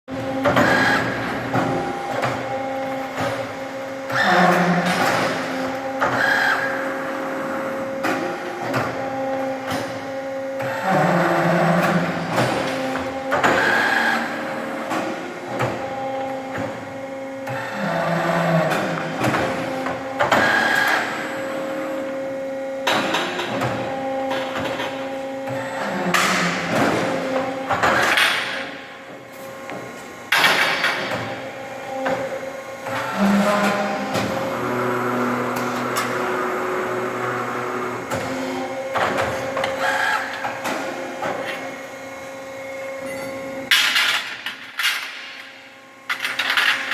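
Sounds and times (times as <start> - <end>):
pipe-bending machine motor whine: 0.1 - 46.9
short machine tones: 42.9 - 43.6.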